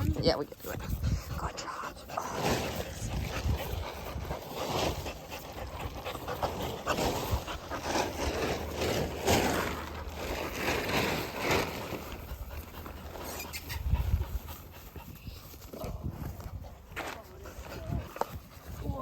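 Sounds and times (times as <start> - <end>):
plastic tarp rustling: 2.3 - 13.4.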